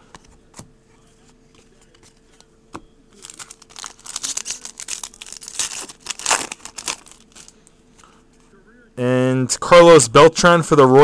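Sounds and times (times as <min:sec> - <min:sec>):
foil wrapper crinkling: 0:03.2 - 0:07.6.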